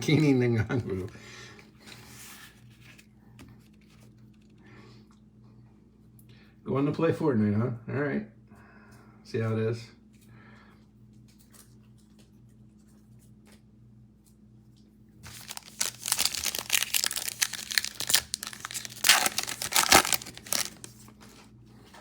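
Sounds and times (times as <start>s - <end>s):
foil wrapper tearing and crinkling: 15.2s - 21.4s.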